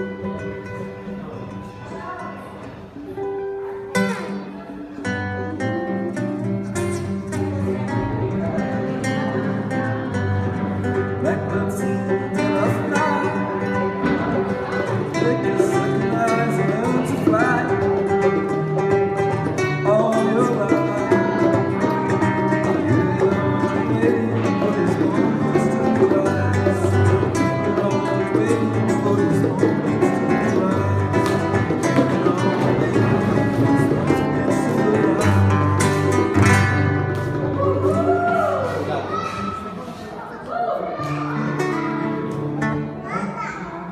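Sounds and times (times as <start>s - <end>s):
acoustic guitar: 0.0s - 43.9s
hand drums: 5.4s - 39.4s.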